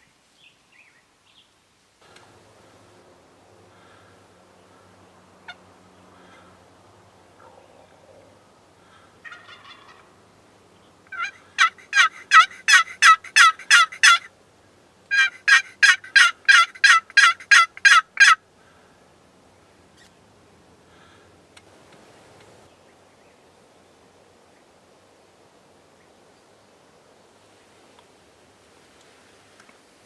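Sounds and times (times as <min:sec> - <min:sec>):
faint turkey call: 0:03.7 - 0:06.6, 0:07.3 - 0:10.2, 0:11.1 - 0:14.3, 0:15.1 - 0:19.0
turkey yelps: 0:09.2 - 0:10.1, 0:11.1 - 0:14.3, 0:15.1 - 0:18.4.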